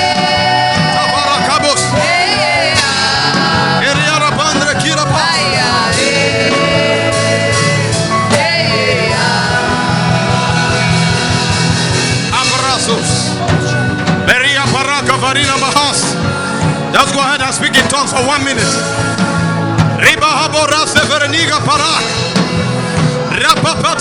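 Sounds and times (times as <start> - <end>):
person singing: 0.0 - 12.0
sustained worship chords: 0.0 - 23.4.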